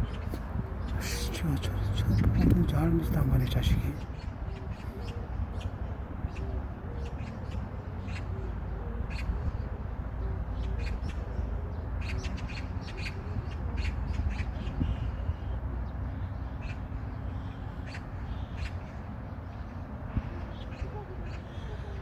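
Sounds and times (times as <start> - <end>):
steady low rumble: 0.0 - 4.1.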